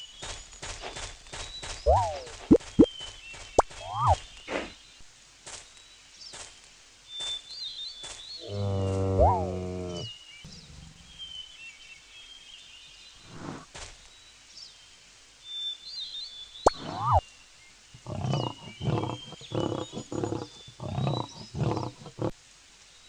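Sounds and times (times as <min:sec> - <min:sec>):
animal mooing: 0:08.4 - 0:11.2, 0:18.0 - 0:22.3.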